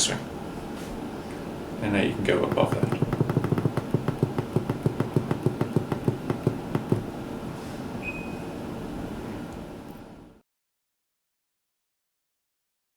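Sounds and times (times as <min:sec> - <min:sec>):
short high beep: 0:08.0 - 0:08.5.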